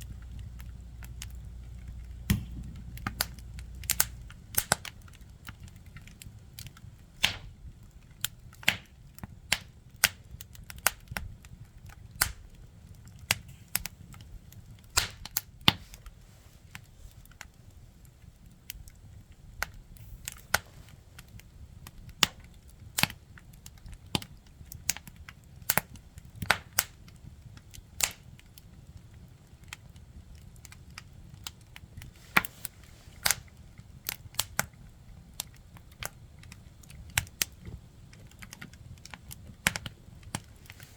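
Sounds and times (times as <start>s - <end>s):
faint low rumble: 0.0s - 8.6s
firewood crackling and popping: 0.0s - 40.9s.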